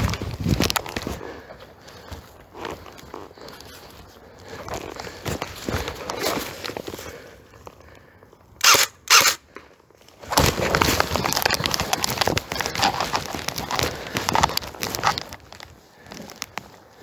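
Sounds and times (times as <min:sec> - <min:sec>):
rustling through dry undergrowth: 0:00.0 - 0:17.0
airsoft rifle bursts: 0:08.6 - 0:09.4.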